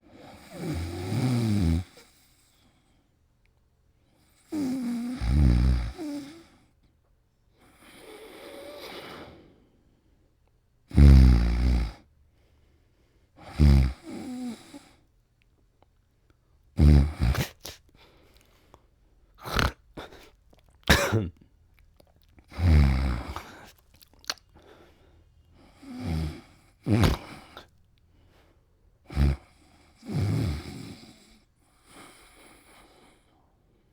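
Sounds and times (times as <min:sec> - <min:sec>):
man snoring: 0:00.5 - 0:02.0, 0:04.5 - 0:06.5, 0:10.9 - 0:12.1, 0:13.4 - 0:14.9, 0:16.8 - 0:17.8, 0:19.4 - 0:20.3, 0:20.9 - 0:21.3, 0:22.5 - 0:23.8, 0:25.8 - 0:27.7, 0:29.1 - 0:31.3.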